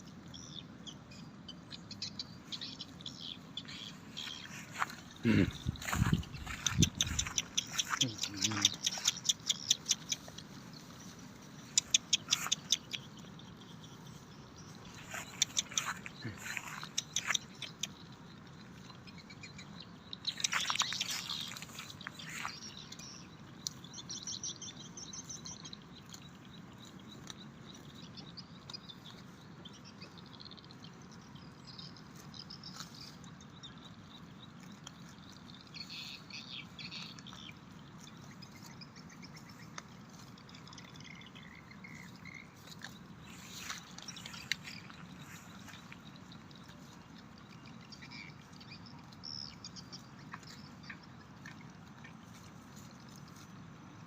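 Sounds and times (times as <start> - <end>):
low outdoor background: 0.0 - 54.0
small birds chirping: 0.0 - 54.0
rapid sharp ticks: 6.7 - 10.4, 11.6 - 13.1.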